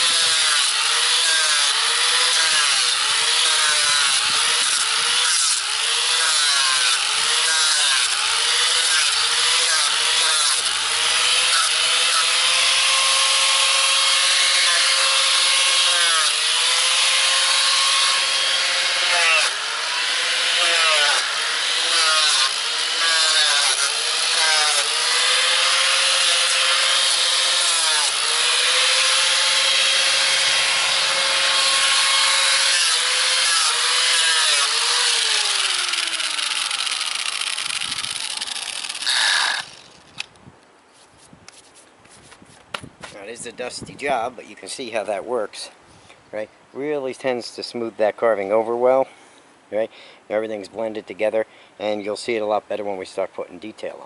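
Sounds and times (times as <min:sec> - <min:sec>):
angle grinder sanding wood: 0:00.0 - 0:40.0
grinder motor whine: 0:00.0 - 0:40.3.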